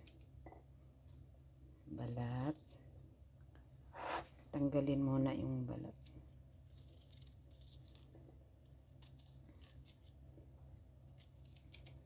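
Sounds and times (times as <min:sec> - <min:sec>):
low steady hum: 0:00.0 - 0:12.0
ginger being peeled: 0:06.0 - 0:10.3, 0:11.0 - 0:12.0.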